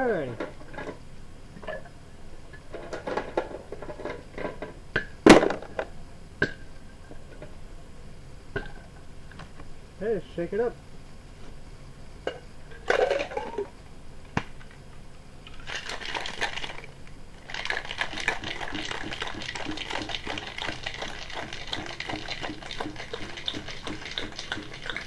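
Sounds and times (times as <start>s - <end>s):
cocktail shaker rattling: 15.5s - 25.0s.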